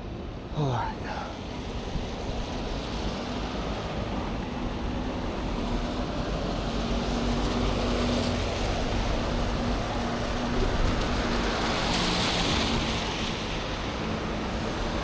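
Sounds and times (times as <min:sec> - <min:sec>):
street traffic rush: 0:00.0 - 0:15.0.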